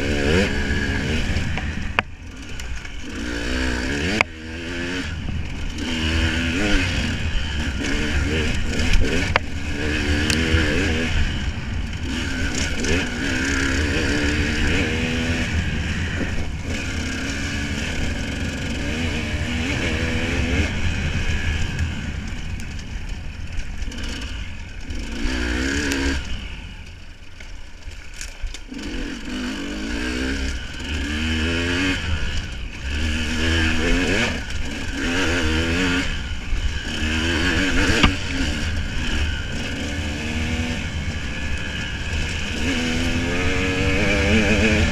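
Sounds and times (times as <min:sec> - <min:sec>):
vehicle engine revving: 0:28.7 - 0:44.9.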